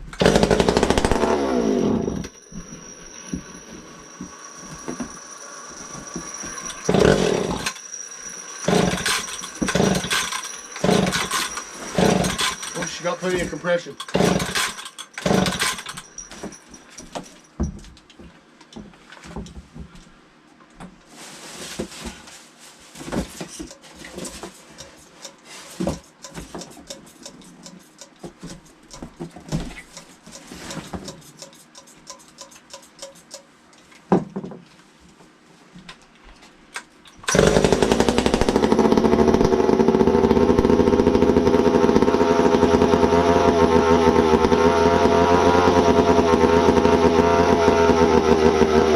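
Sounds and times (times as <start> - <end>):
chainsaw engine running: 0.1 - 16.1, 37.2 - 48.9
knocks and clattering: 8.6 - 19.9.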